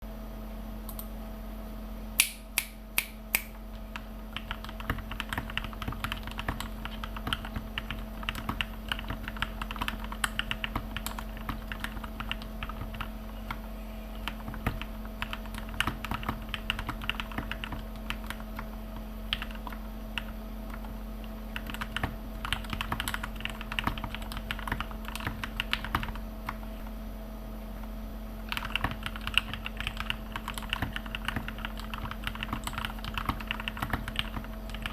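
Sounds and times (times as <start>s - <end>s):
muted keyboard typing: 3.8s - 27.0s, 28.4s - 34.9s.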